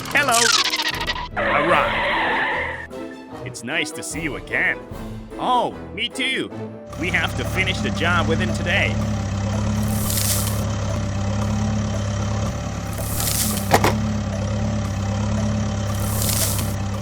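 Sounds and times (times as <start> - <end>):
vehicle engine idling hum: 7.0 - 17.0.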